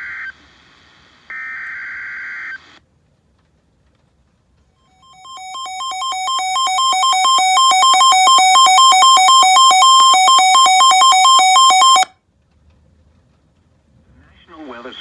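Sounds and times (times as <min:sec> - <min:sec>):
electronic two-note beeping: 0:05.1 - 0:12.1.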